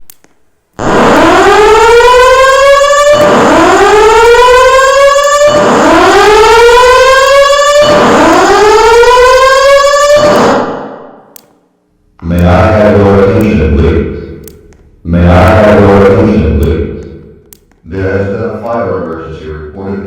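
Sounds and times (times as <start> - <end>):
fire alarm whoop tone: 0.8 - 10.9.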